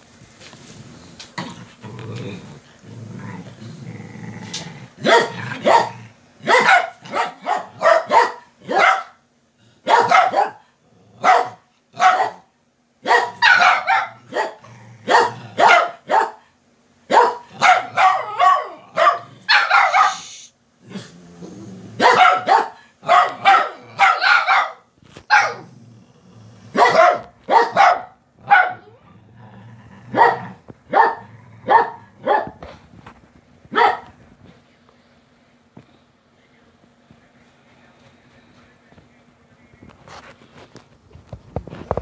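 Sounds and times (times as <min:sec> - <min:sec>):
dogs barking: 0:05.0 - 0:09.2, 0:09.8 - 0:16.5, 0:17.1 - 0:20.3, 0:22.0 - 0:25.7, 0:26.7 - 0:29.0, 0:30.1 - 0:32.6, 0:33.7 - 0:34.2.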